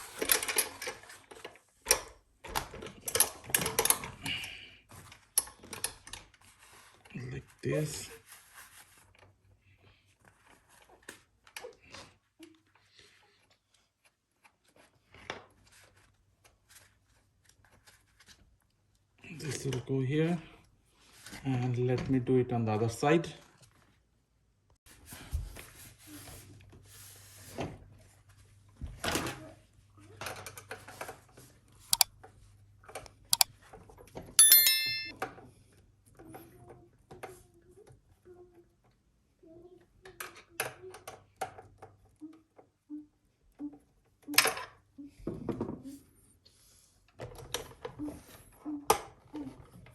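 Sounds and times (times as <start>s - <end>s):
bright metallic ring: 34.4s - 35.1s
sharp metallic clicks: 34.4s - 35.1s.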